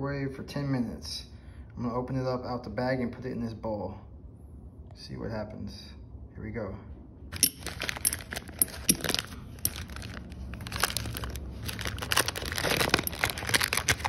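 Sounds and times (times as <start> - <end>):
paper bag tearing and crinkling: 7.6 - 14.0.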